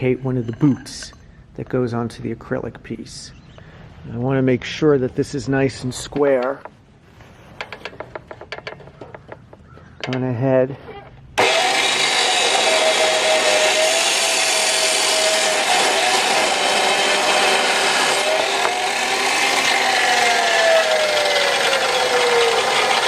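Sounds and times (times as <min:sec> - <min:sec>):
milling machine cutting metal: 0:11.4 - 0:23.0.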